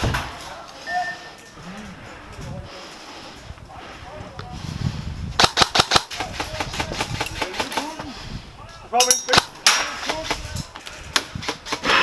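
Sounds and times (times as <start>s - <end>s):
airsoft guns popping: 5.4s - 8.0s, 9.1s - 12.0s.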